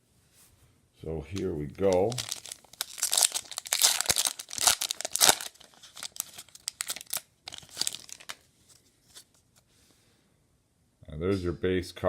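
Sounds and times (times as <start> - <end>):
wrapper rustling and clicks: 1.4 - 9.3
wrapper tearing and crinkling: 1.8 - 8.4.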